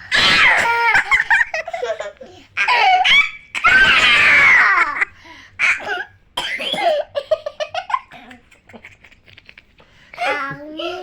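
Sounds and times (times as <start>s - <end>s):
child coughing: 5.6s - 7.2s.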